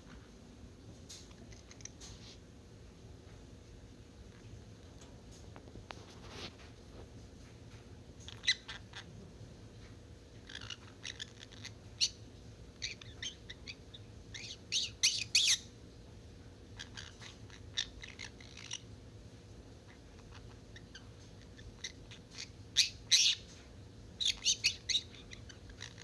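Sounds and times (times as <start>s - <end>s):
bird chick chirping and squawking: 8.2s - 9.1s, 10.4s - 15.8s, 16.7s - 18.9s, 19.8s - 23.6s, 24.2s - 26.0s.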